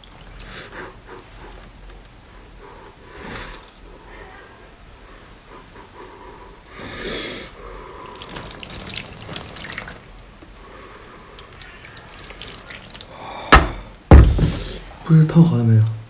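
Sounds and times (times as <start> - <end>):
water gushing: 0.0 - 2.0, 8.0 - 13.2
water dripping and splashing: 0.0 - 2.3, 8.0 - 13.2.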